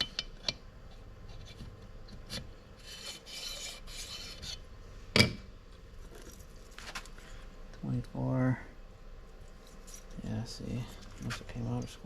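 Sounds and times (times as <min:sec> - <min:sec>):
piston ring scraping cylinder: 0:00.0 - 0:04.6.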